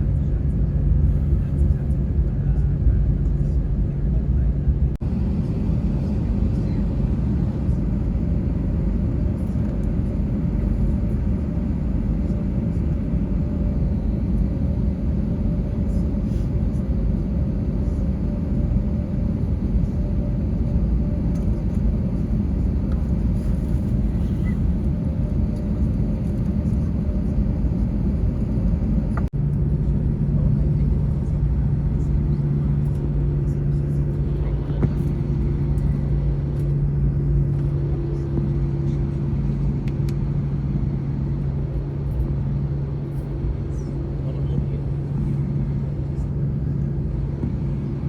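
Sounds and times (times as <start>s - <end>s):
airliner cabin engine rumble: 0.0s - 48.0s
low droning hum: 0.0s - 48.0s.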